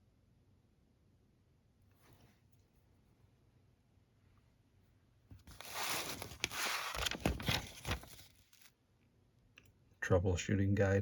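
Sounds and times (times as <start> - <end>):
paper pages rustling: 5.3 - 8.8.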